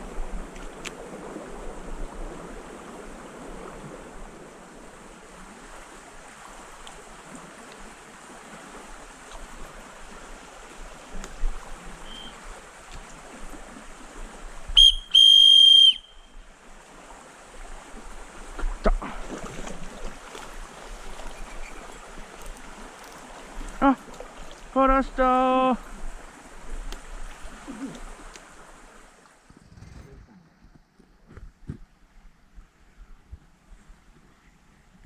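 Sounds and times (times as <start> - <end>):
river water flowing: 0.0 - 29.5
high whistle-like tone: 12.0 - 12.4, 14.8 - 16.4.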